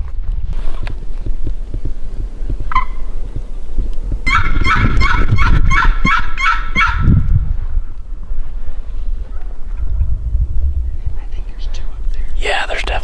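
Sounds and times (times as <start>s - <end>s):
turkey gobbling: 2.7s - 3.0s, 4.3s - 7.0s.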